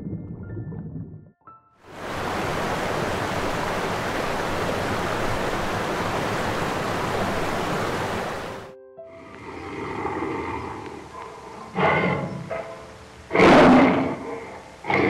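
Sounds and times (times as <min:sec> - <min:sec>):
steady rushing noise: 0:01.9 - 0:08.7.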